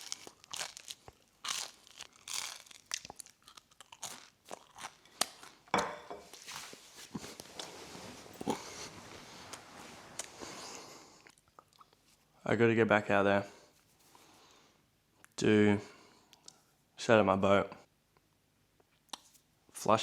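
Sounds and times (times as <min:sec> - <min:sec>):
person chewing crunchy bread: 0:00.0 - 0:05.7, 0:08.4 - 0:08.8.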